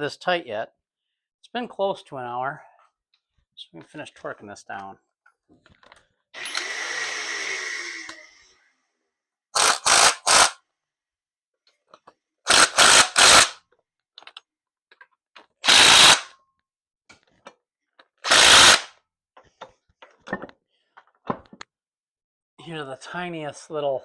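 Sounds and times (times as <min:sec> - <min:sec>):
power tool running on bolts: 0:06.4 - 0:08.5, 0:09.6 - 0:10.6, 0:12.5 - 0:13.6.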